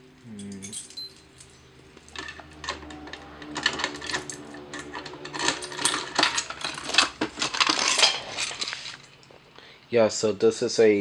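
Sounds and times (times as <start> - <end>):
metallic clicks and clinks: 0.1 - 9.4.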